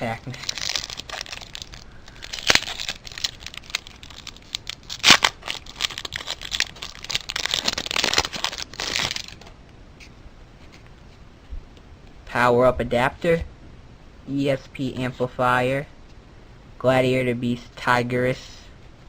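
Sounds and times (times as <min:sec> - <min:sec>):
foil wrapper tearing and crinkling: 0:00.1 - 0:09.4.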